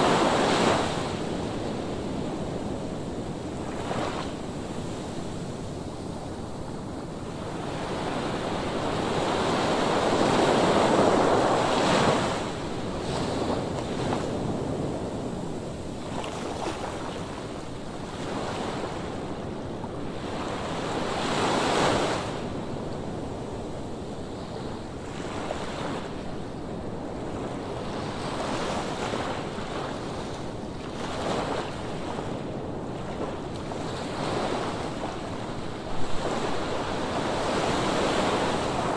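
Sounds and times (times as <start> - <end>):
waves breaking on shore: 0.0 - 19.2, 27.6 - 38.9.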